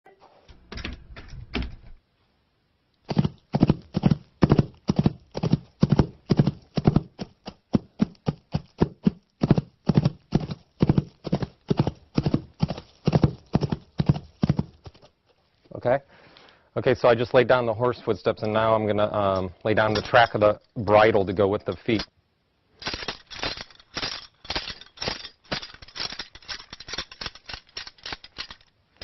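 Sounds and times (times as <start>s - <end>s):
foley horse hoofbeats: 3.1s - 15.1s, 22.8s - 28.7s.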